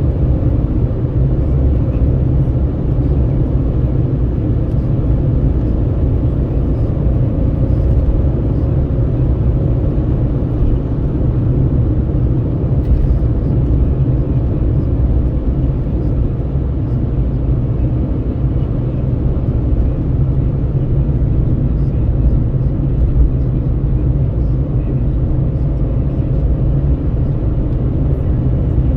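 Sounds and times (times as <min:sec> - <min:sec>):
tyre and engine rumble: 0:00.0 - 0:28.9.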